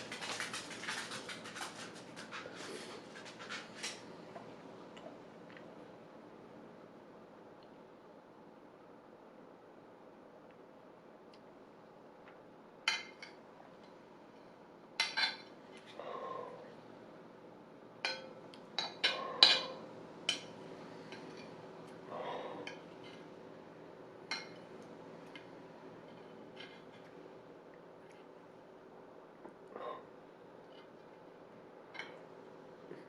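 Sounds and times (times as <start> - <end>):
cutlery clinking on plate: 18.1 - 21.6, 24.3 - 24.6.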